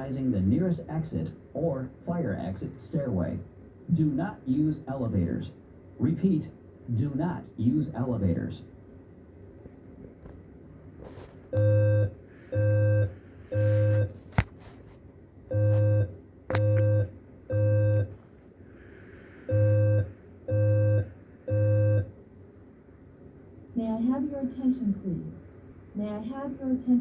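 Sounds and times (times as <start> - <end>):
fire alarm evacuation tones: 11.5 - 14.2, 15.5 - 18.2, 19.5 - 22.1.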